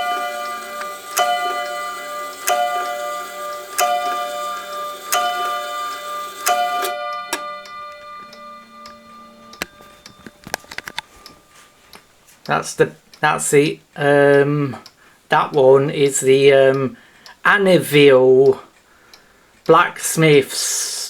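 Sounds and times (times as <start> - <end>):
clock striking gong bars: 0.0 - 11.8
clock mechanism clicks: 0.0 - 16.9
clock ticking: 0.0 - 21.0.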